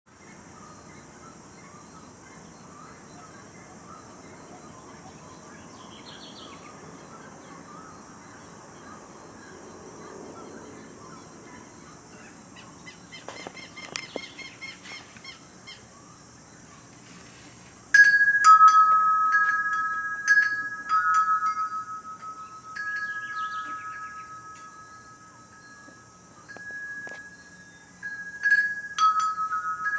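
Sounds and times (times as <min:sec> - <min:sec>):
faint bird calls: 0:00.5 - 0:16.9
wind chime ringing: 0:17.9 - 0:29.9.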